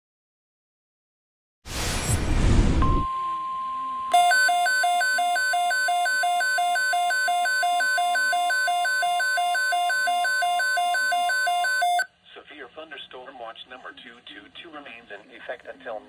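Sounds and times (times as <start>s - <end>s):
faint steady alarm tone: 2.8s - 12.1s
harsh two-pitch alert alarm: 2.8s - 12.1s.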